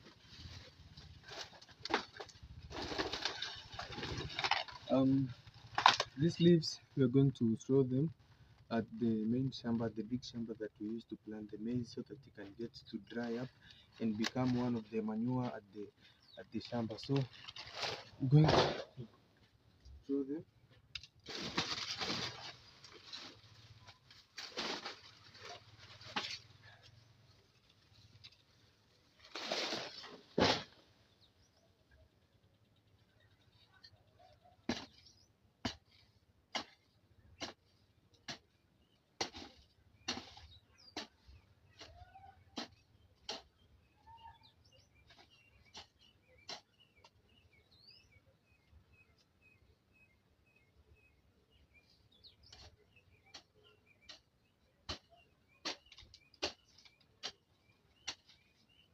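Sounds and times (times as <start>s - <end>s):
rustling of weeds and leaves: 0.0s - 7.1s, 16.4s - 18.5s, 21.2s - 31.2s
small birds chirping: 2.1s - 18.4s, 30.9s - 58.9s.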